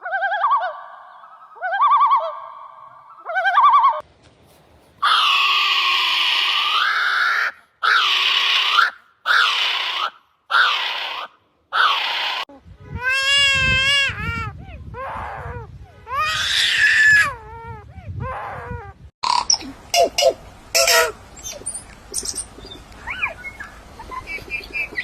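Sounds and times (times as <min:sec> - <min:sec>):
harsh bird screeches: 0:05.0 - 0:12.5
warbling trilled bird calls: 0:19.2 - 0:25.0.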